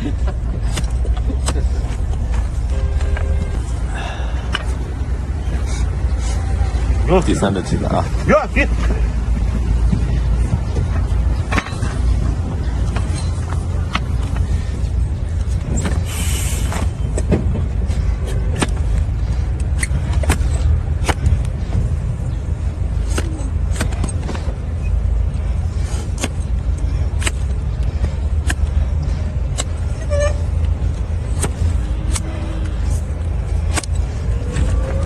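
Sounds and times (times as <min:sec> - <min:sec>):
low rumble: 0:00.0 - 0:35.0
hoof-trimming tools clicking: 0:30.6 - 0:33.0, 0:33.6 - 0:35.0.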